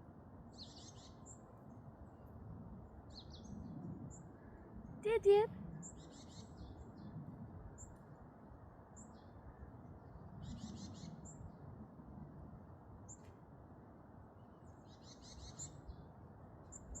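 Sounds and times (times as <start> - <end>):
faint background noise: 0.0 - 17.0.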